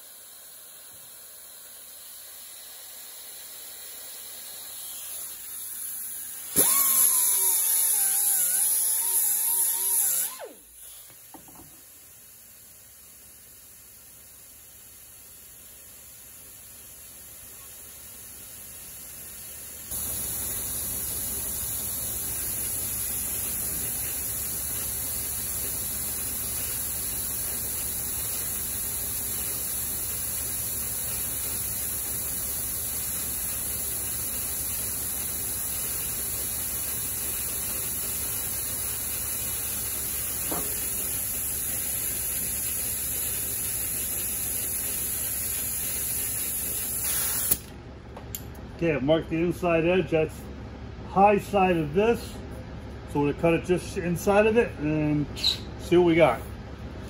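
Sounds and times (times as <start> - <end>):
power tool trimming sheet metal: 4.8 - 10.6, 46.9 - 47.7.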